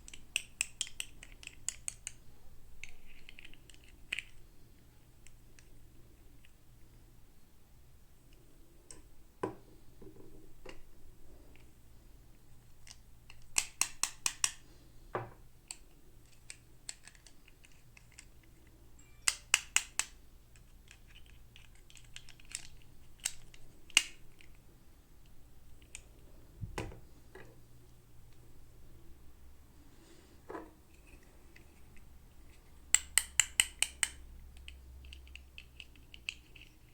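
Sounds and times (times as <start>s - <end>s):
plastic toys clicking: 0.0s - 2.2s, 2.8s - 4.4s, 12.7s - 14.6s, 15.6s - 24.6s, 32.9s - 36.9s.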